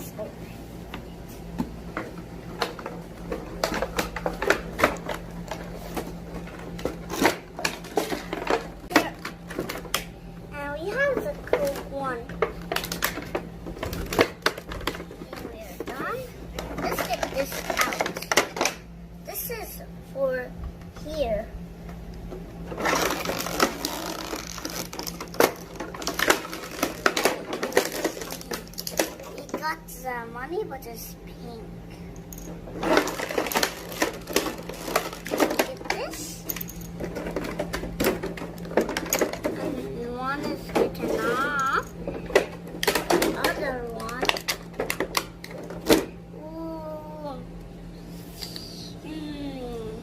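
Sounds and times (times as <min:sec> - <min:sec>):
plastic packaging crinkling: 0:22.8 - 0:28.8
plastic toy box clicks and crackles: 0:22.8 - 0:29.2, 0:32.8 - 0:39.5.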